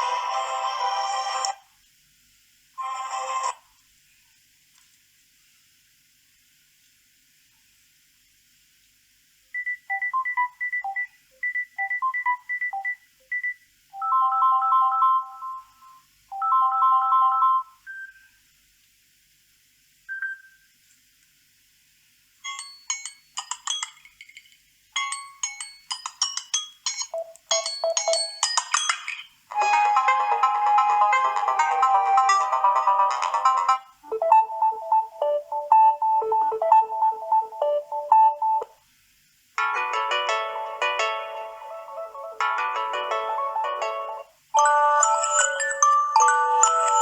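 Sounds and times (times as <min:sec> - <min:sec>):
plinking melodic notes: 0:29.6 - 0:38.7, 0:39.8 - 0:47.0.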